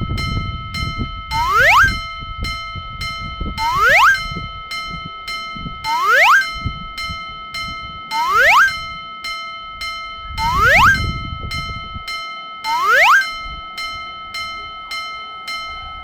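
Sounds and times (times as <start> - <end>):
crossing warning bell ringing: 0.0 - 16.0
rising swoop sound effect: 1.4 - 2.0, 3.6 - 4.2, 5.9 - 6.5, 8.1 - 8.8, 10.4 - 11.0, 12.7 - 13.3.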